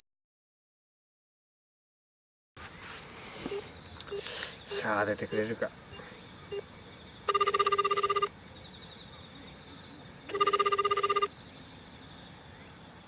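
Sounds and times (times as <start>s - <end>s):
warbling telephone ringback tone: 3.5s - 6.6s, 7.3s - 8.3s, 10.3s - 11.3s.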